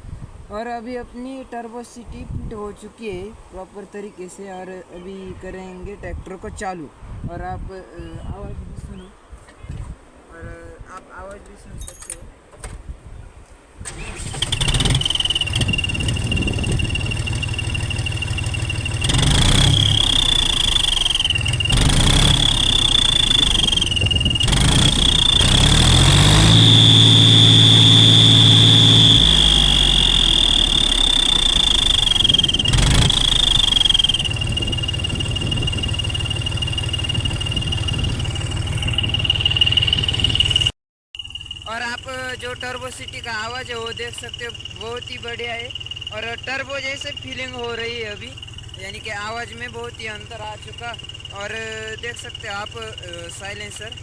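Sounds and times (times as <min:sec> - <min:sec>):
tractor diesel engine revving: 0:13.8 - 0:40.7, 0:41.8 - 0:54.0
high whistle rising with revs: 0:14.6 - 0:54.0.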